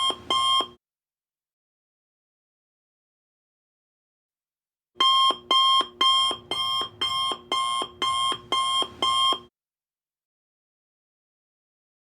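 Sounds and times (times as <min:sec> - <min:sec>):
electronic alarm beeping: 0:05.0 - 0:09.4.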